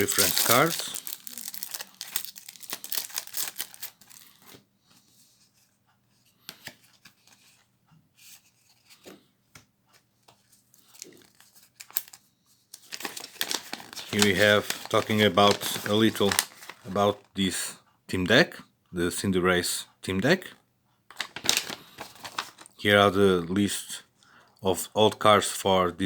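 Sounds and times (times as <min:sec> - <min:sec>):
packaging rustling and crinkling: 0:00.0 - 0:04.6, 0:10.7 - 0:17.3, 0:21.1 - 0:22.8.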